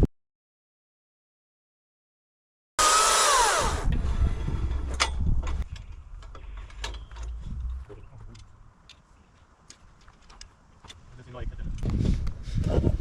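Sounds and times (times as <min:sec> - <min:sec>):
chainsaw revving: 0:02.8 - 0:03.9.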